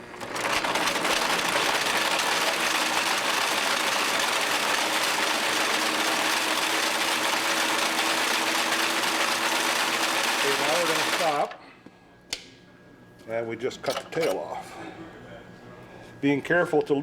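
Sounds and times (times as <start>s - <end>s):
braiding machine whirring: 0.0s - 11.6s.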